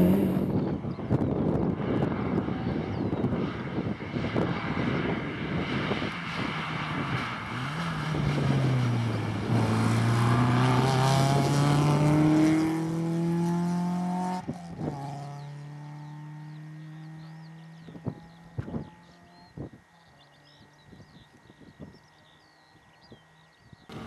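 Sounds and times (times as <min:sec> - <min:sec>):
car engine accelerating: 0:00.0 - 0:00.6, 0:06.4 - 0:20.6
rushing road noise: 0:00.0 - 0:24.0.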